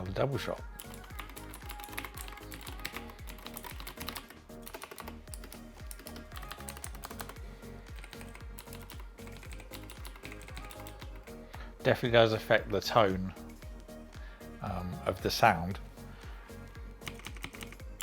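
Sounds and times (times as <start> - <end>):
mechanical keyboard typing: 0.8 - 7.4, 8.0 - 11.3, 17.0 - 18.0.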